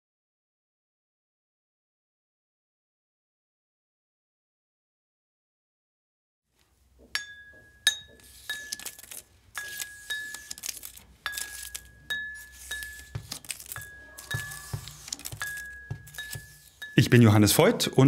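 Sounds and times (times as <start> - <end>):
glassy clinks: 7.1 - 17.3.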